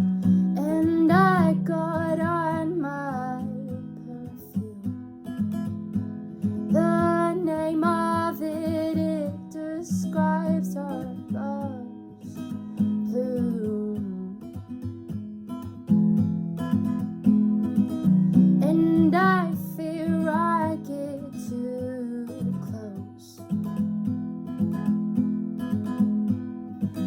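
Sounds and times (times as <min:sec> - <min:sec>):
strummed acoustic guitar: 0:00.0 - 0:27.0
woman singing: 0:00.5 - 0:05.0, 0:06.6 - 0:14.7, 0:18.6 - 0:23.6.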